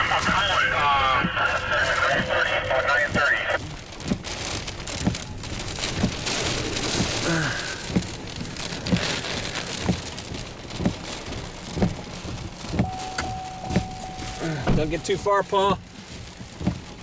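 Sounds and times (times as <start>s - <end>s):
heavy rain on vehicle: 0.0s - 17.0s
short low thump: 12.8s - 15.0s.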